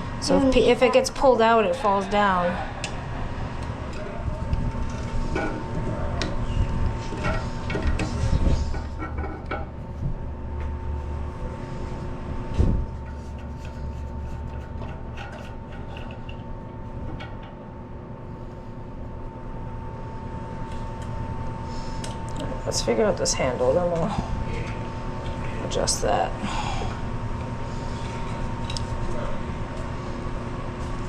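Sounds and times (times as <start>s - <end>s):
steady high hum: 0.0s - 31.0s
toilet flush parts rubbing and clicking: 13.0s - 16.5s.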